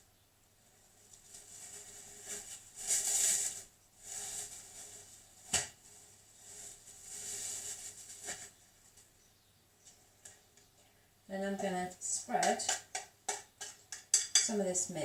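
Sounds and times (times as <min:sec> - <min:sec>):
plastic wrapping crinkling: 0:01.0 - 0:05.6, 0:06.4 - 0:09.0.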